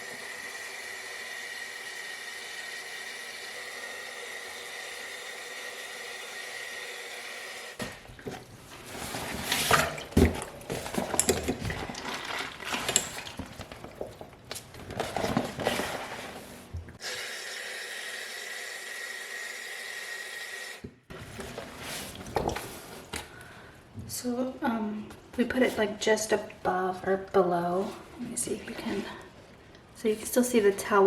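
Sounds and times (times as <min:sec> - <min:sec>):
tap water running: 0:00.0 - 0:14.6, 0:16.8 - 0:23.2
water splashing and sloshing: 0:07.8 - 0:17.0, 0:21.1 - 0:23.3.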